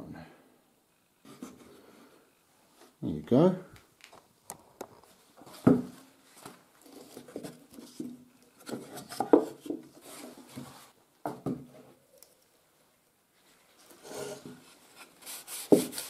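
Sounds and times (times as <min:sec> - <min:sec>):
wooden parts knocking on workbench: 0:11.3 - 0:11.7.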